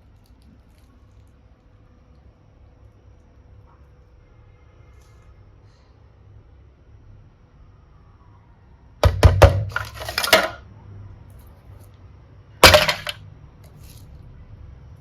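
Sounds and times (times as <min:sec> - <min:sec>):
small objects clattering in container: 0:09.6 - 0:10.6, 0:12.6 - 0:14.0.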